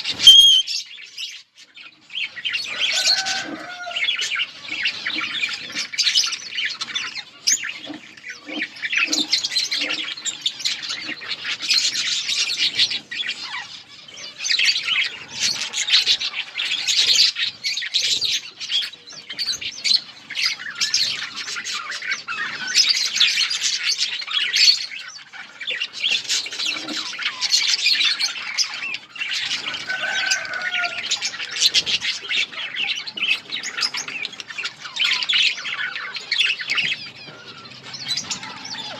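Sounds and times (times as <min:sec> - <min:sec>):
budgerigar squawks: 0:00.0 - 0:00.8
budgerigars chirping and chattering: 0:00.0 - 0:38.9.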